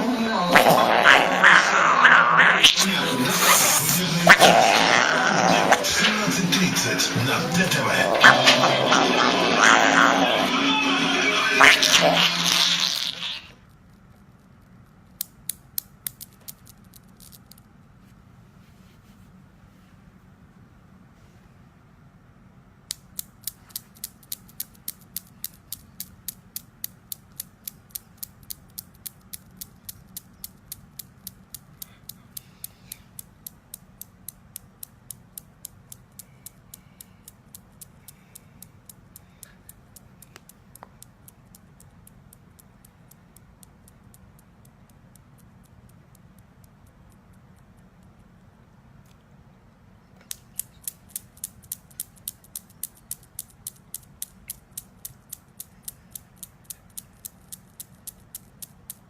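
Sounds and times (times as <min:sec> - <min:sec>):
low steady hum: 0:00.0 - 0:59.0
rapid mechanical clicking: 0:13.6 - 0:17.6, 0:22.9 - 0:48.4, 0:50.3 - 0:59.0.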